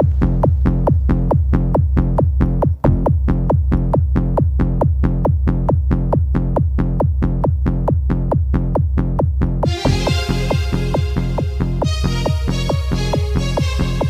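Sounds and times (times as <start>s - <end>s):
electronic dance music: 9.6s - 14.0s
synth and cymbal sounds: 9.7s - 14.0s.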